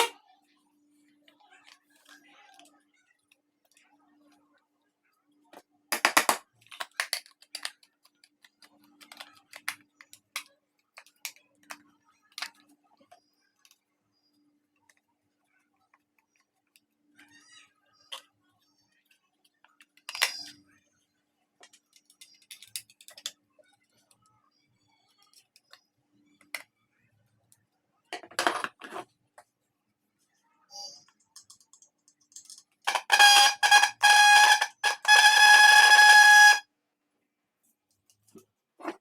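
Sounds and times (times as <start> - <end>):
clicks and knocks of handling: 6.0 - 12.6, 31.0 - 32.8
motorcycle horn beeping: 32.9 - 36.6.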